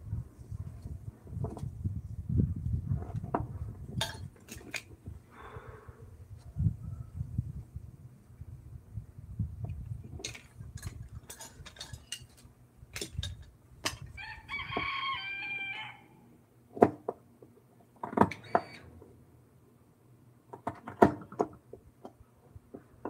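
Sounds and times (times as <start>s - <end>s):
rooster crowing: 14.2s - 16.2s.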